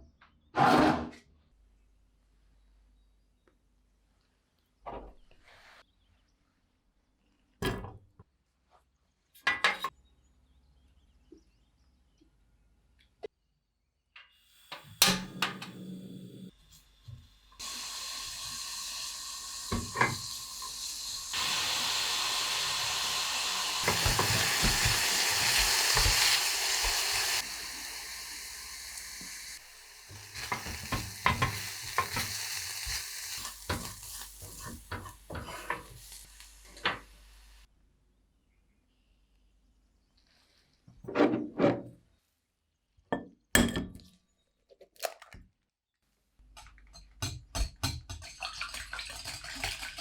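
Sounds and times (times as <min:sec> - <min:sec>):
onion sizzling in a pan: 0:16.5 - 0:37.7
utensil scraping a pan: 0:22.6 - 0:27.4, 0:30.1 - 0:37.0.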